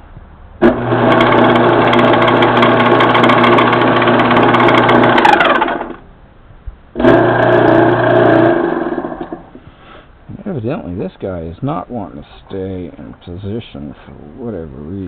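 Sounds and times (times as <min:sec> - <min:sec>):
metal lathe motor running: 0:00.6 - 0:06.0, 0:07.0 - 0:09.4.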